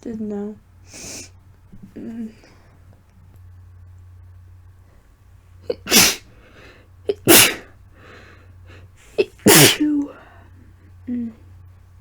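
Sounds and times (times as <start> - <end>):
woman sneezing: 5.7 - 6.3, 7.1 - 7.7, 9.2 - 10.2.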